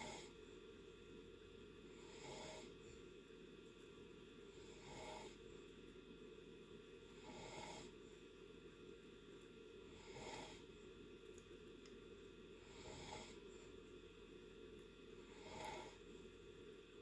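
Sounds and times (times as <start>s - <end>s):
person snoring softly: 0.0s - 0.4s, 1.9s - 2.8s, 4.5s - 5.4s, 7.1s - 8.0s, 9.8s - 10.7s, 12.6s - 13.7s, 15.2s - 16.1s.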